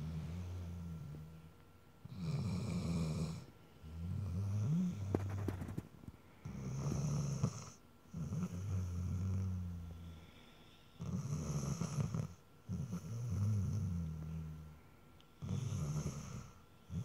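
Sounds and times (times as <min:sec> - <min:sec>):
low rasping snoring: 0:02.0 - 0:05.5, 0:06.4 - 0:10.3, 0:11.0 - 0:14.8, 0:15.4 - 0:17.0.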